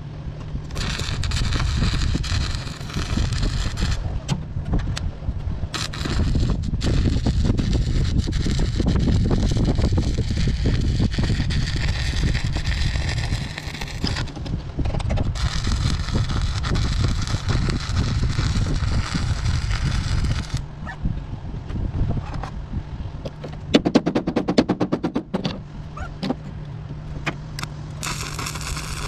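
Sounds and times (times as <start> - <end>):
welding arc crackling: 0.7 - 4.1, 5.7 - 14.4, 15.2 - 20.7, 27.6 - 29.0.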